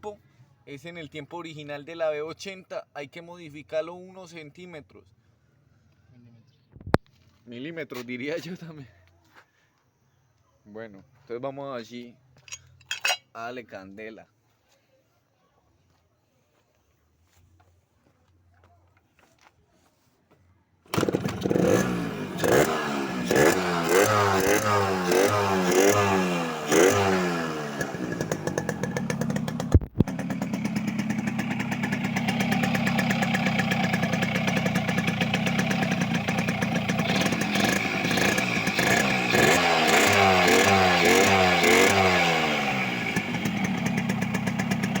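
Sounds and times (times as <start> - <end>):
two-stroke motorcycle engine revving: 20.9 - 45.0.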